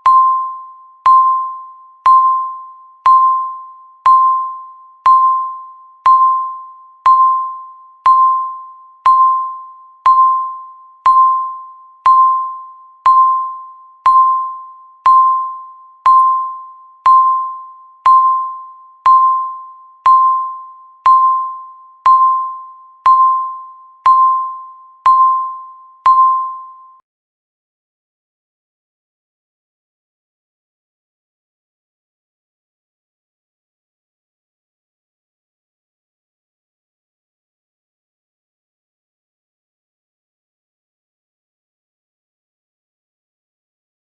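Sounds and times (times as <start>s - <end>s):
timer electronic ding: 0.0s - 27.0s.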